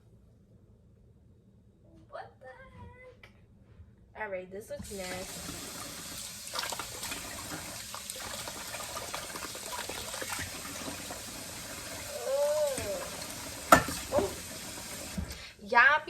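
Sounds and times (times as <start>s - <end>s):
watery hiss: 4.8s - 15.6s.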